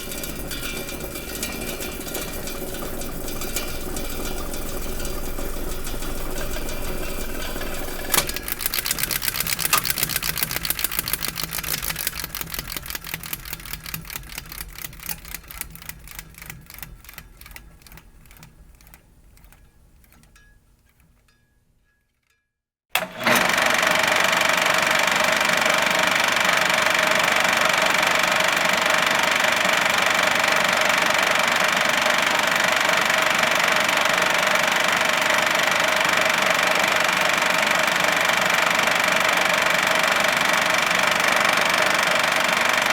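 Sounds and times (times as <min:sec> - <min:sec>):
projector whirring and whining: 0:00.0 - 0:13.8, 0:23.0 - 0:42.9
film projector clattering: 0:00.0 - 0:21.4, 0:22.9 - 0:42.9.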